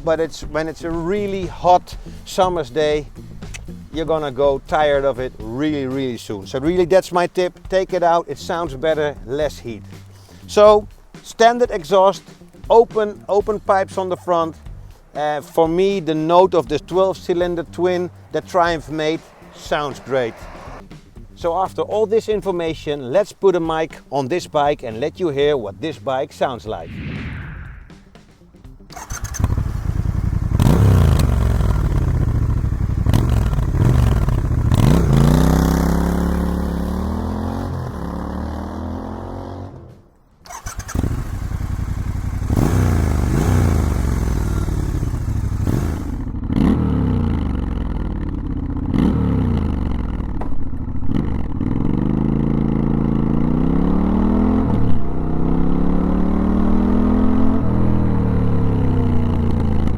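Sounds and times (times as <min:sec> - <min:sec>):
motorcycle engine accelerating: 0:26.8 - 0:59.9.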